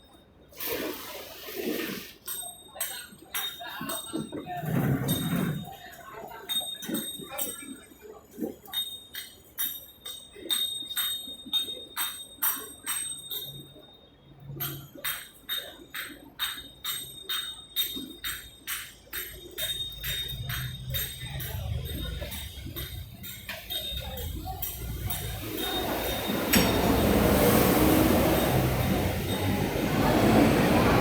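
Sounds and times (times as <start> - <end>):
low traffic rumble: 20.1 - 31.0.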